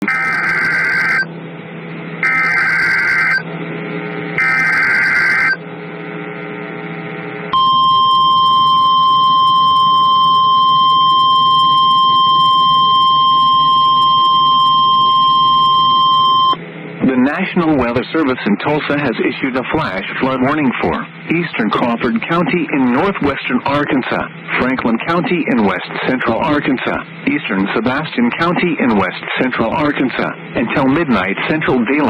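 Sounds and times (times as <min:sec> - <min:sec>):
steady high-pitched alarm tone: 0:00.0 - 0:01.3, 0:02.2 - 0:03.4, 0:04.4 - 0:05.6
warbling digital data bursts: 0:00.0 - 0:01.3, 0:02.2 - 0:03.4, 0:04.4 - 0:05.6
low hum: 0:00.0 - 0:01.4, 0:02.1 - 0:13.6.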